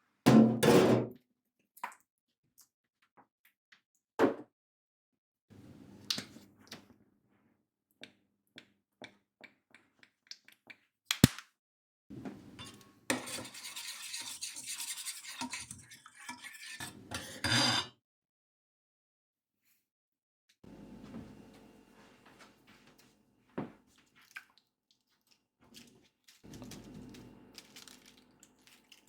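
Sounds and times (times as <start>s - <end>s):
scraping and rubbing: 13.1s - 16.9s.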